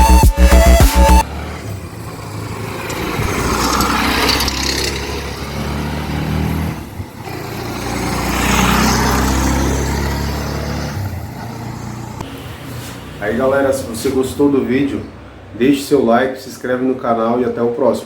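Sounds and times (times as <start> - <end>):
motorcycle engine running: 1.8 - 12.2.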